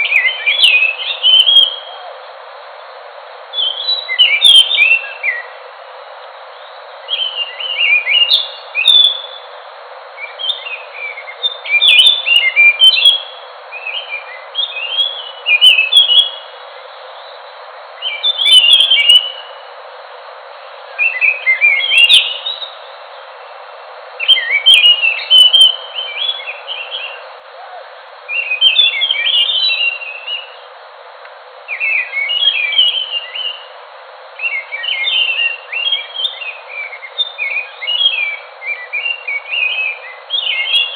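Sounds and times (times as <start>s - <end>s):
thrush singing whistled phrases: 0.0s - 2.2s, 3.5s - 5.6s, 7.1s - 9.5s, 10.2s - 16.5s, 18.0s - 19.6s, 21.0s - 22.9s, 24.2s - 30.6s, 31.7s - 33.7s, 34.4s - 40.9s
steady hiss: 0.0s - 40.9s.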